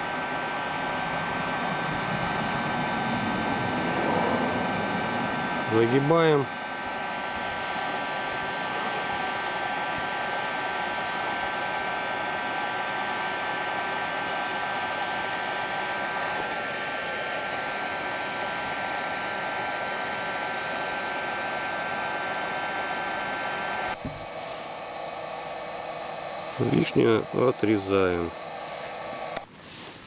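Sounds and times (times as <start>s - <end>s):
heat gun blowing with whine: 0.0s - 30.0s.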